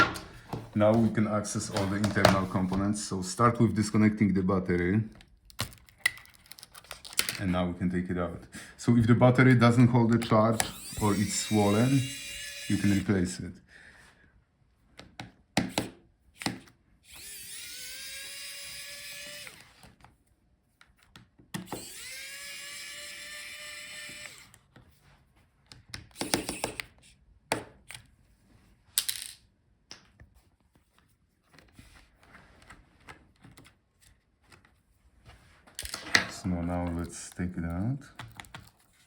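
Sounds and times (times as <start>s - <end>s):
electric screwdriver whining: 10.5s - 13.1s, 17.1s - 19.9s, 21.6s - 24.6s, 26.1s - 26.9s.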